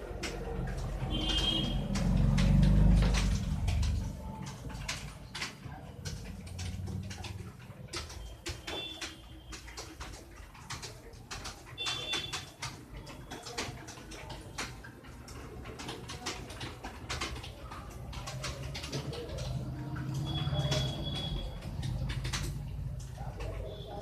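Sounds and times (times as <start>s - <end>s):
keyboard typing clatter: 0.0s - 24.0s.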